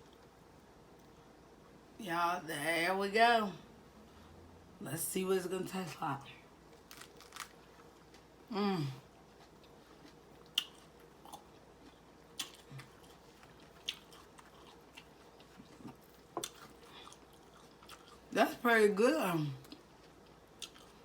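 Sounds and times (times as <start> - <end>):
lettuce crunching: 6.7 - 8.3, 9.3 - 18.3
chewing mouth sounds: 9.3 - 18.3.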